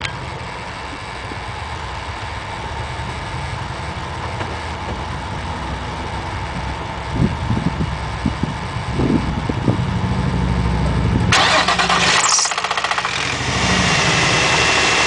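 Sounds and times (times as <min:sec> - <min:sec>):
car engine idling: 0:00.0 - 0:15.0
engine knocking: 0:11.3 - 0:15.0.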